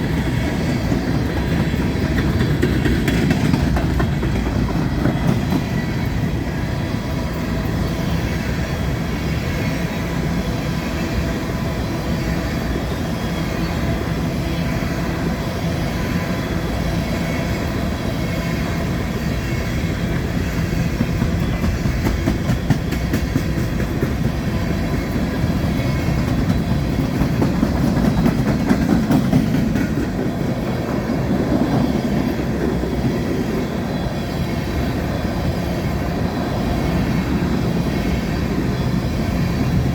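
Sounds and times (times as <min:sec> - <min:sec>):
wheels clicking over rail joints: 0:00.0 - 0:06.4, 0:20.1 - 0:32.8
train cars rolling past: 0:00.0 - 0:39.9.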